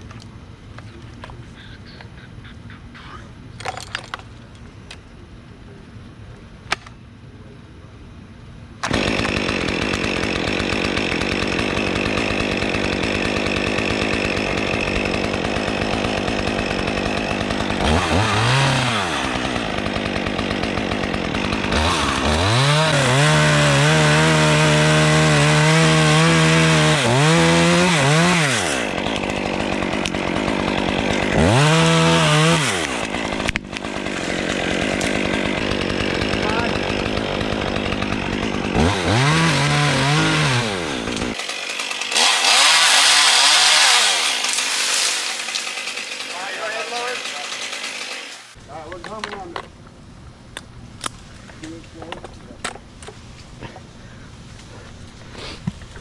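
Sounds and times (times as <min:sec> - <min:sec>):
chainsaw engine revving: 0:08.8 - 0:48.6.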